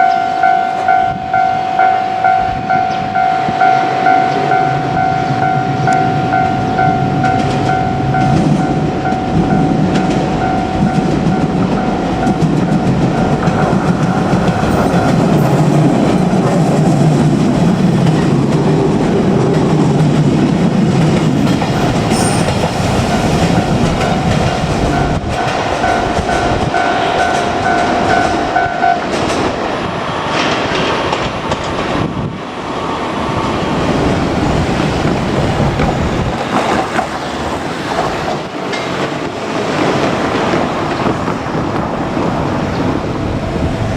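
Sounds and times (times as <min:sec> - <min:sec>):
level-crossing warning bell: 0:00.0 - 0:30.5, 0:37.4 - 0:41.0
train wheels clattering on rails: 0:02.2 - 0:43.9.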